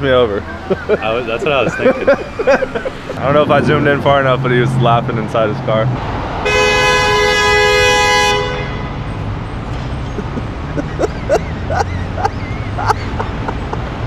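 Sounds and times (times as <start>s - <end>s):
road noise: 0.0s - 14.0s
car horn honking: 6.4s - 9.0s.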